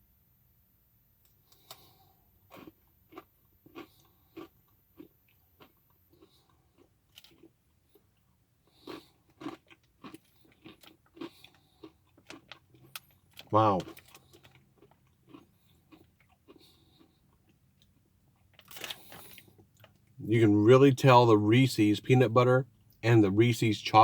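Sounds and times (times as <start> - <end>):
person chewing crunchy snack: 1.5 - 20.2.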